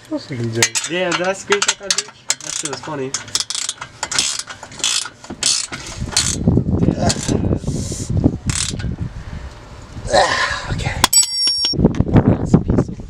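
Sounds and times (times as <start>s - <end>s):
ratchet wrench clicking: 0.6s - 6.5s, 8.5s - 8.9s.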